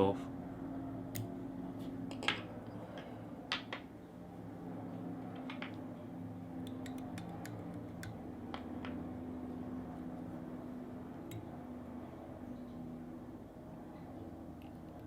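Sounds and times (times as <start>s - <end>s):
steady low hum: 0.0s - 15.0s
scissors snipping: 6.7s - 8.2s.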